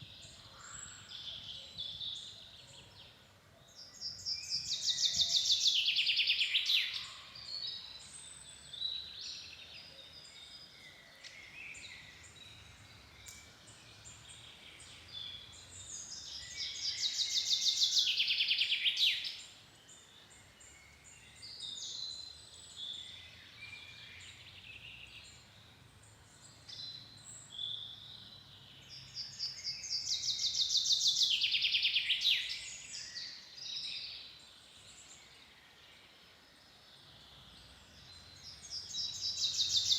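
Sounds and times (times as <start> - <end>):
songbird singing fast trill: 3.7 - 35.5, 36.8 - 39.9.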